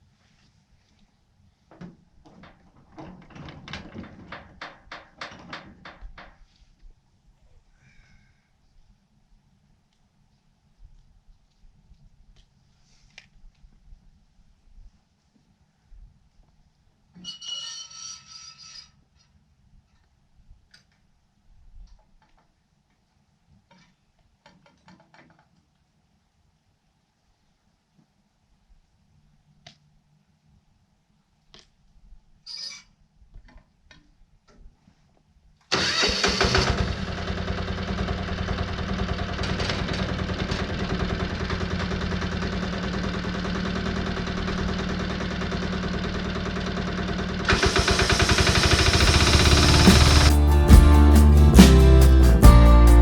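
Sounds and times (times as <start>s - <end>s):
sawmill engine pulsing: 35.8s - 52.9s.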